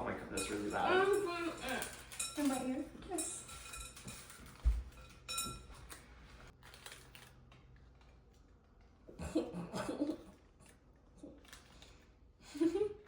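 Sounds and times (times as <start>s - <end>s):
utensil clinking against bowl: 0.0s - 6.0s.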